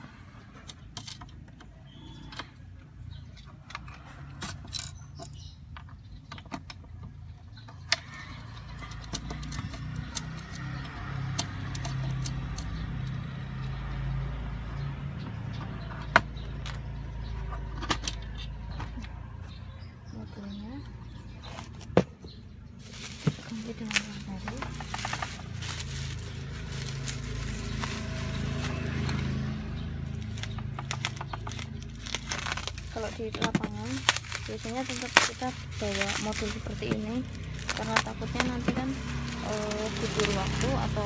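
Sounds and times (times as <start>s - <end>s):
parts clicking and rattling: 22.8s - 41.0s.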